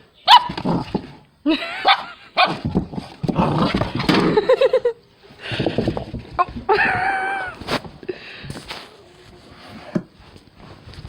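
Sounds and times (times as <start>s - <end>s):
puppy barking: 0.3s - 0.6s, 1.8s - 2.6s
person wheezing laughter: 6.7s - 7.7s.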